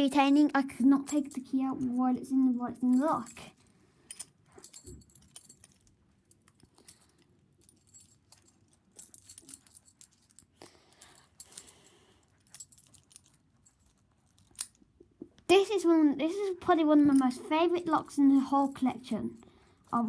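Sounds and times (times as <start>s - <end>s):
keys jangling: 2.8s - 14.9s.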